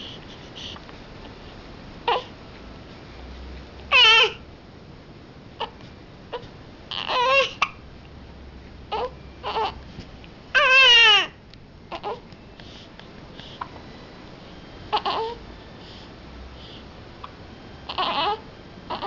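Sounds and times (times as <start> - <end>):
baby crying: 2.1 - 2.3, 3.9 - 4.4, 5.6 - 7.7, 8.9 - 9.8, 10.6 - 12.2, 14.9 - 15.4, 17.9 - 19.0.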